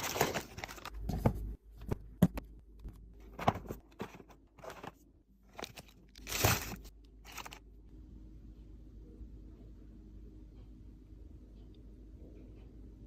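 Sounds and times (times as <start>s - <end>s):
plastic packaging crinkling: 0.0s - 1.1s, 4.0s - 7.6s
items clicking and tapping: 0.0s - 7.6s.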